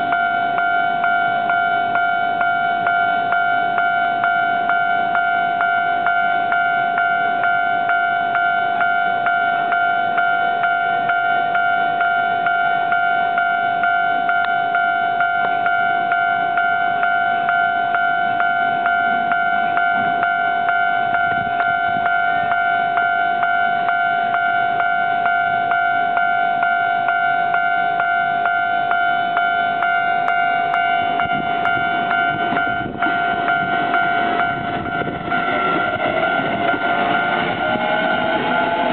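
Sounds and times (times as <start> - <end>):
level crossing bell ringing: 0.0 - 38.9
train rumble: 0.0 - 38.9.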